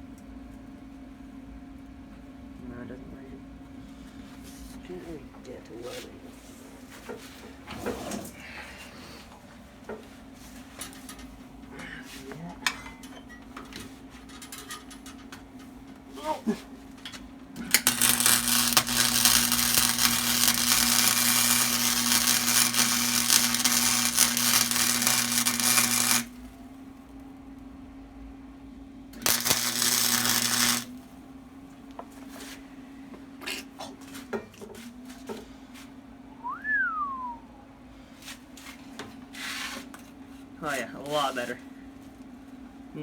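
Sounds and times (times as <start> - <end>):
welding arc crackling: 17.6 - 26.4, 29.2 - 31.0.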